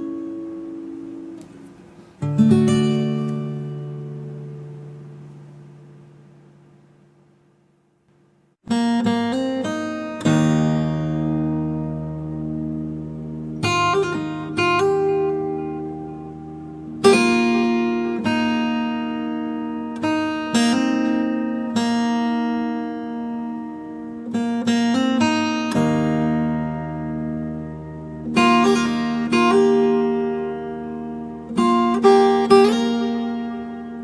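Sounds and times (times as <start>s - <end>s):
acoustic guitar playing: 0.0s - 7.4s, 8.1s - 34.0s.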